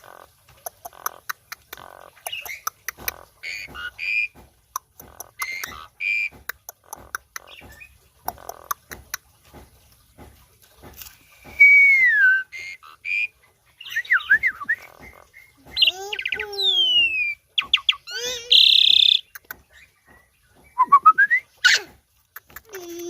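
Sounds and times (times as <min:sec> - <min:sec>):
starling singing: 0:00.9 - 0:04.4, 0:05.0 - 0:08.8, 0:11.9 - 0:21.8.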